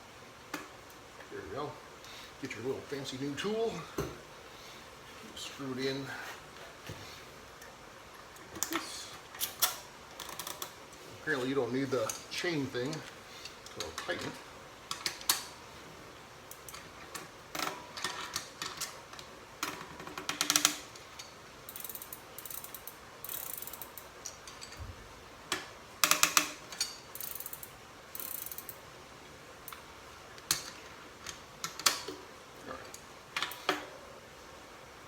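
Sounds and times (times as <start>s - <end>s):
ratcheting clicks of lockring tool: 8.4s - 10.8s, 16.5s - 24.8s, 26.0s - 28.8s, 30.4s - 32.1s.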